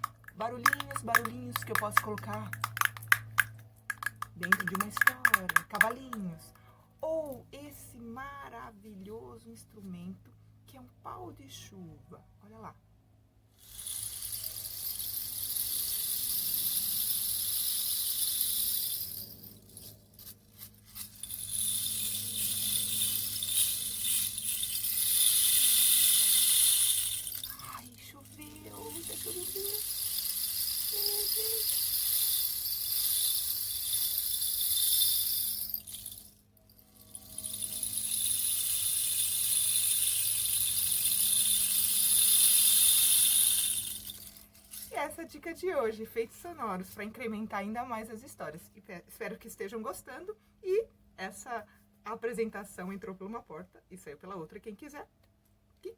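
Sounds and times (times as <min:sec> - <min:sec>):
rain stick clicks: 0:00.0 - 0:06.3
rain stick rattling: 0:00.0 - 0:06.3, 0:13.6 - 0:45.0.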